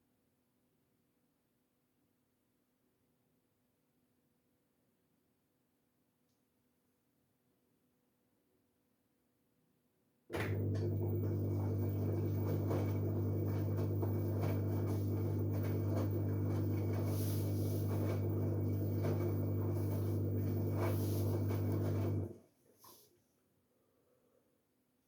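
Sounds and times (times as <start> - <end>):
washing machine humming: 10.4 - 22.4.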